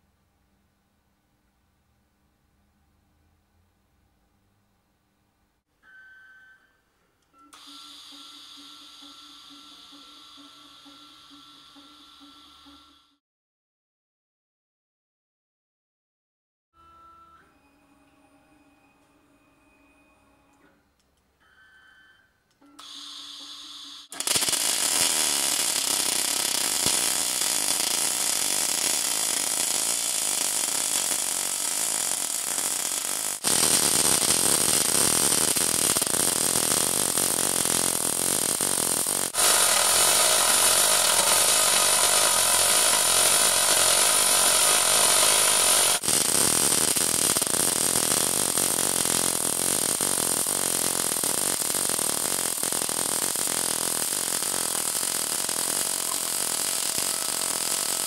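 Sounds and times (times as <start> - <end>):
welding hiss and crackle: 22.8 - 58.0.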